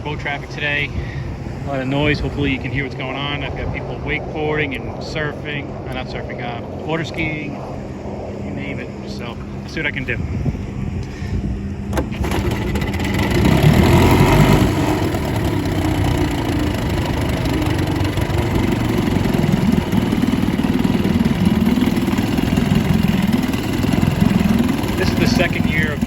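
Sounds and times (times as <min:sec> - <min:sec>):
outboard motor running: 0:10.5 - 0:26.0.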